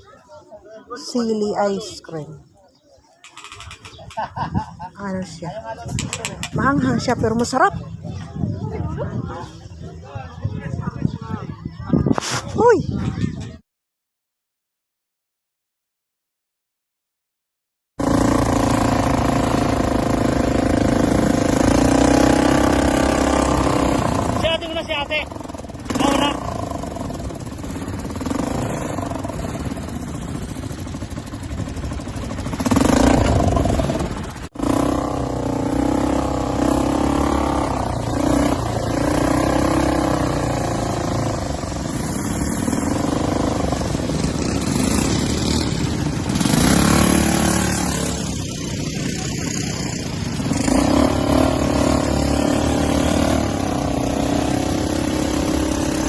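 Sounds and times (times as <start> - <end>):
vehicle engine running: 18.0 - 56.0.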